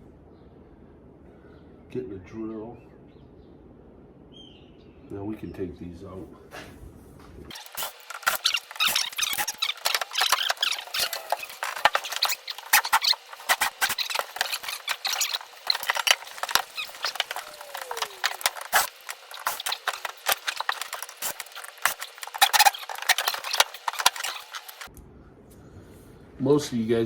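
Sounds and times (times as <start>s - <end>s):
drill bit chattering and squealing: 7.5s - 24.9s.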